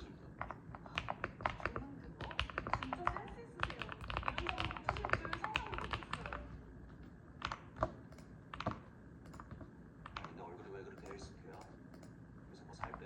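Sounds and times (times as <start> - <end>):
typing on mechanical keyboard: 0.4 - 6.5, 7.4 - 10.4.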